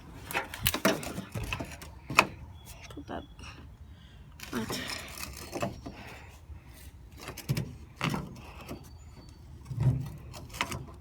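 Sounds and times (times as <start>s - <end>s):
parts clunking and knocking: 0.0s - 2.5s, 4.4s - 6.4s, 7.1s - 11.0s.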